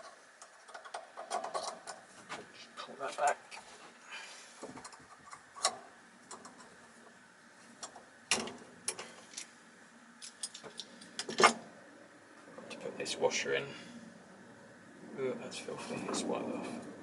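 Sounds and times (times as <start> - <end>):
metal parts clicking and knocking: 0.0 - 2.1
faint steady hum: 0.0 - 17.0.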